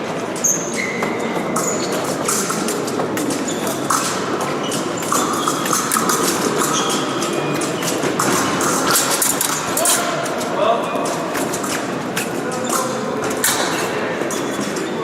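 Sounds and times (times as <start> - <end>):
large hall noise: 0.0 - 15.0
brief squeaks: 0.4 - 2.0.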